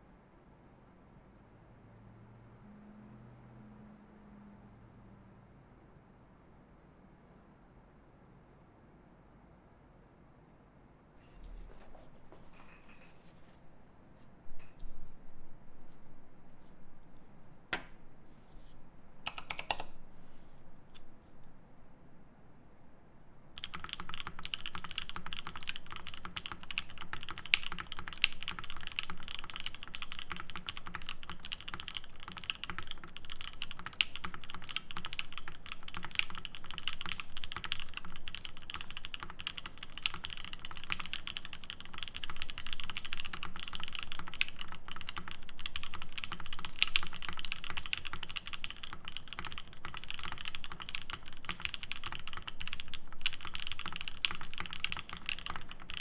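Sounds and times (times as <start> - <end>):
fast mechanical keyboard typing: 19.2 - 20.0, 23.6 - 56.0.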